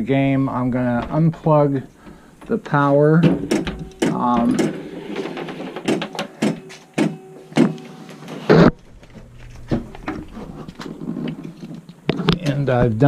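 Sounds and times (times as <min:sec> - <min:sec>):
handling clicks and knocks: 0:00.5 - 0:07.9.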